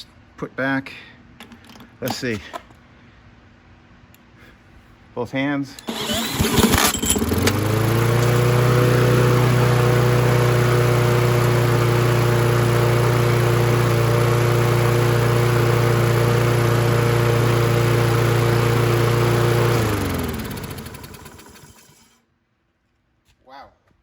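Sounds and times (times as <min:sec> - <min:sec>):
lawnmower engine running: 0:05.8 - 0:22.2.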